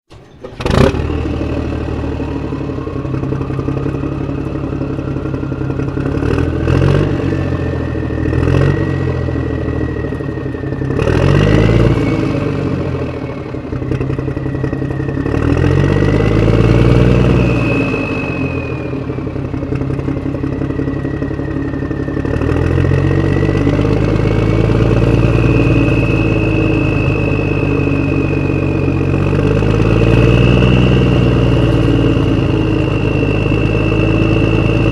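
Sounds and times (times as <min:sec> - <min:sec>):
vehicle engine revving: 0:00.1 - 0:34.9
thin high whine: 0:13.2 - 0:34.9.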